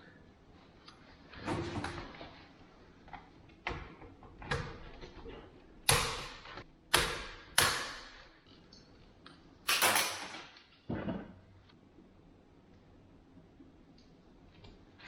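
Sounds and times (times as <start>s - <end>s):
sharp knocks ringing in room: 5.8s - 8.3s.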